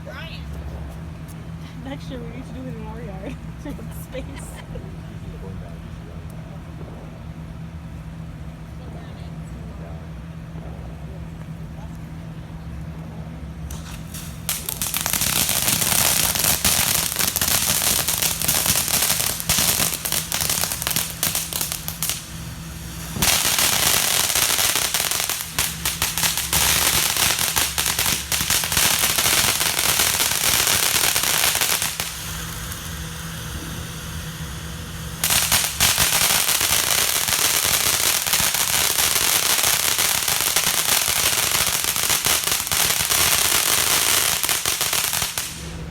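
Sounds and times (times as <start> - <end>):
firecrackers crackling: 13.6 - 45.9.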